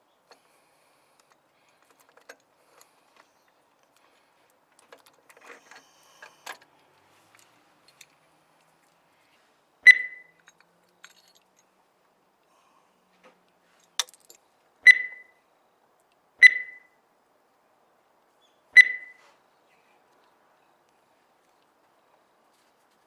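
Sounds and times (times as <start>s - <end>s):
metal tools clicking and rattling: 10.4s - 11.6s, 13.8s - 14.4s.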